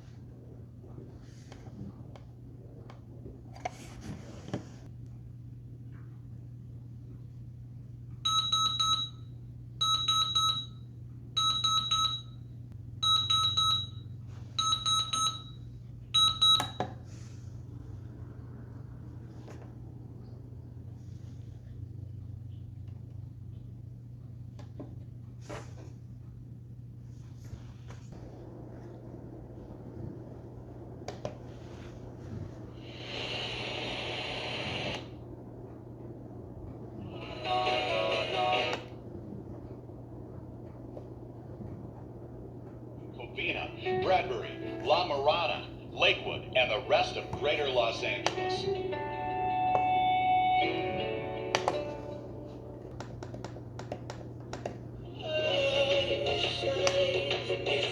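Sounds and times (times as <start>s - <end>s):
low steady hum: 0.0s - 57.9s
alarm clock beeping: 8.3s - 9.2s, 9.8s - 10.8s, 11.4s - 12.3s, 13.0s - 14.0s, 14.6s - 15.6s
radio static hissing: 32.6s - 35.2s, 37.0s - 39.0s, 43.1s - 49.1s.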